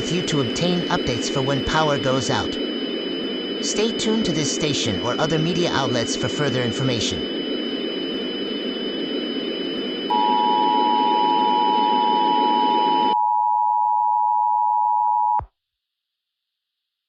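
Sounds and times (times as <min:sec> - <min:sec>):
steady electronic alert tone: 0:00.0 - 0:13.0
thin high whine: 0:00.0 - 0:13.2.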